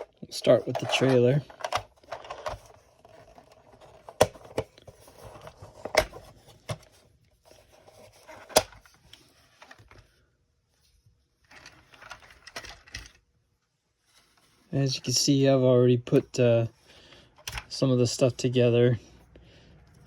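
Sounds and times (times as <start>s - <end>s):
plastic toy parts clicking: 0.7s - 3.3s, 11.5s - 13.2s.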